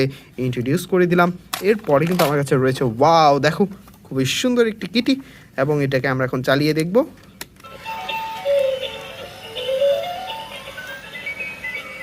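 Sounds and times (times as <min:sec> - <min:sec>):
toy beeping melody: 0:07.6 - 0:12.0.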